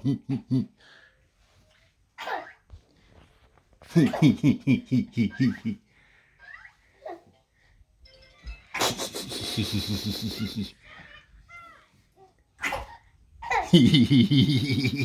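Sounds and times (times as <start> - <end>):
man making goofy vocal noises: 3.8 - 5.8, 8.8 - 10.8
baby giggling: 3.9 - 5.8, 8.8 - 11.2, 12.6 - 15.0.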